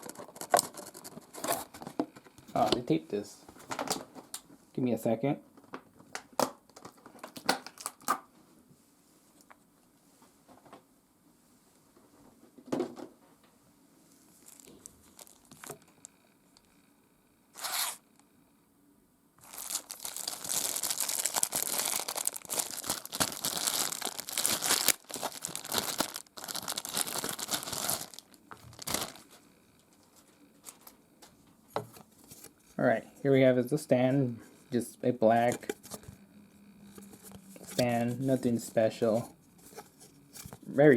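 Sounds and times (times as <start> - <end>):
plastic packaging tearing and crinkling: 0.0 - 1.8, 6.8 - 8.2, 14.4 - 15.9, 17.6 - 18.0, 19.4 - 29.4.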